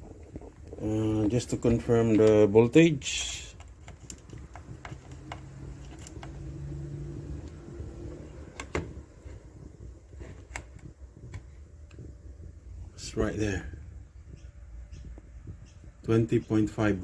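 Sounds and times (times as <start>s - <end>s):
faint low hum: 0.0s - 17.0s
light clicks and taps: 0.2s - 2.5s, 3.3s - 6.5s.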